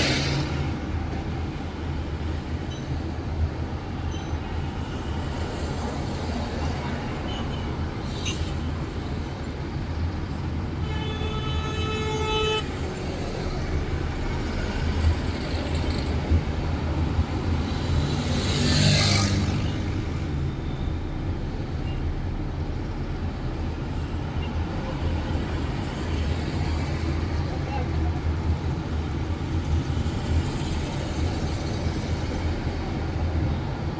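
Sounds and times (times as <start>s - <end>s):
traffic rumble: 0.0s - 33.9s
vehicle horn: 10.8s - 12.8s
vehicle passing by: 17.7s - 20.2s.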